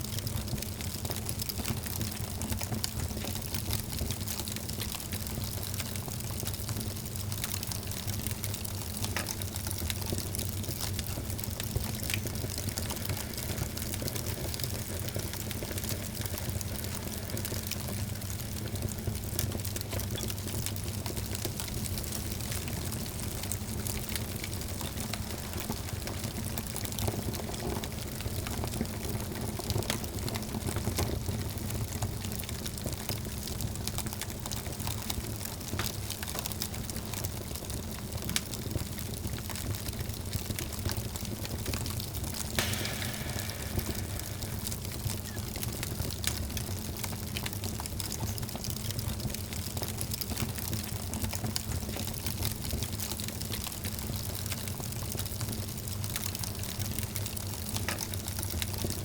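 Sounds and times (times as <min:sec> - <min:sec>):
wood fire crackling in fireplace: 0:00.0 - 0:59.0
steady low rumble: 0:10.5 - 0:19.4, 0:42.6 - 0:46.0.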